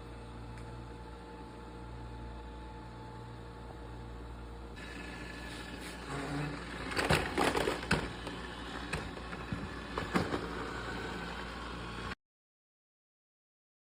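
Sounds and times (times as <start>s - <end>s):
robot vacuum humming: 4.7s - 12.2s.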